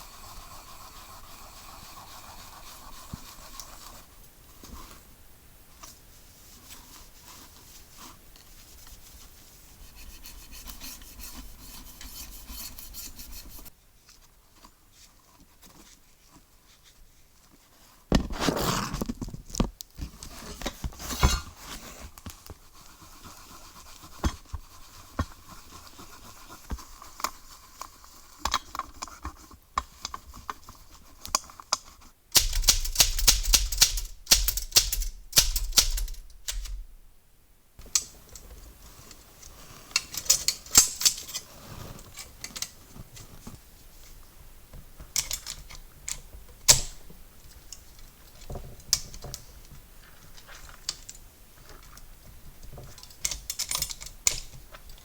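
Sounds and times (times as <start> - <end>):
rapid scrubbing strokes: 0.0 - 4.1, 9.1 - 13.7
brushing and rubbing typewriter: 0.0 - 4.9, 6.0 - 13.7, 20.3 - 31.7, 32.4 - 36.9.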